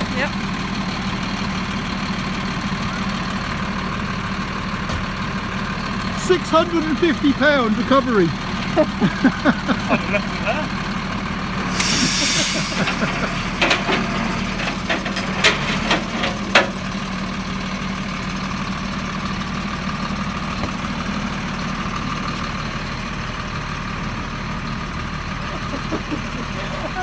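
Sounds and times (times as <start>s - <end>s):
engine idling: 0.0s - 27.0s
short hiss: 11.6s - 14.5s
metallic knocks and clanks: 12.8s - 17.1s.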